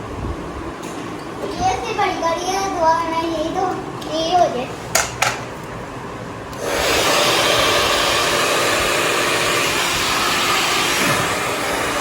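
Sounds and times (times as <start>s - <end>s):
hair dryer blowing: 6.5s - 12.0s.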